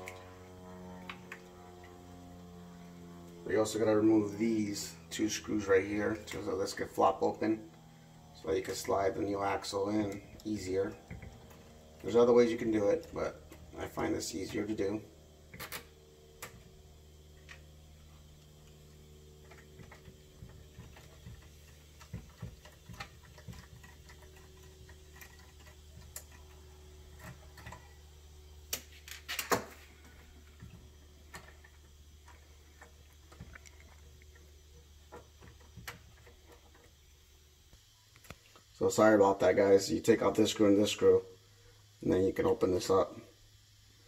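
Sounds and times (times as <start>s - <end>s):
low hum: 0.0s - 44.0s.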